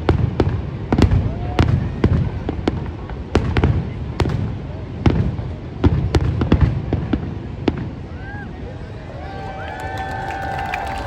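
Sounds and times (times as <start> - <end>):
fireworks bangs: 0.0 - 8.4.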